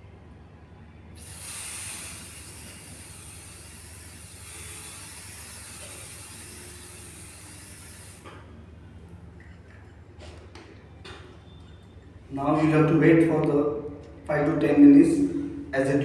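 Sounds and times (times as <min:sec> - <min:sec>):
aerosol can spraying hiss: 0:01.2 - 0:08.2.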